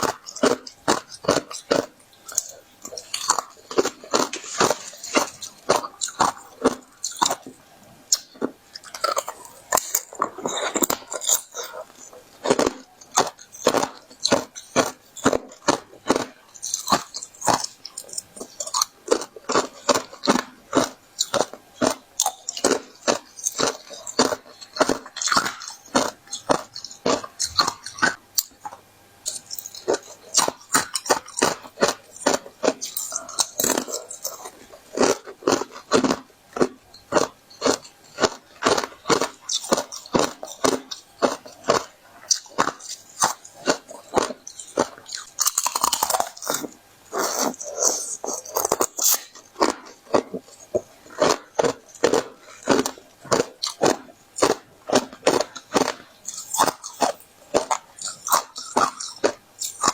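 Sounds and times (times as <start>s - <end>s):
person crunching ice: 0.0s - 7.5s, 29.3s - 59.9s.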